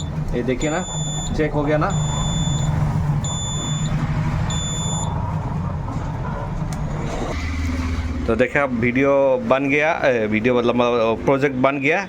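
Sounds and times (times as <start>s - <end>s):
high-pitched buzzer beeps: 0.0s - 5.2s.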